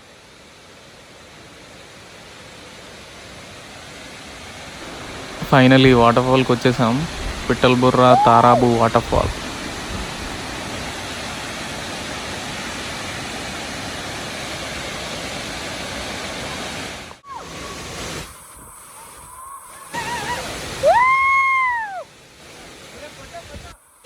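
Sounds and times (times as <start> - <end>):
waterfall roaring: 2.0 - 18.4.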